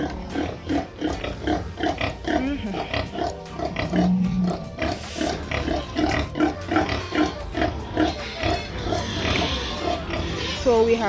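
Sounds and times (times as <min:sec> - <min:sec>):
sow grunting rhythmically: 0:00.0 - 0:11.0.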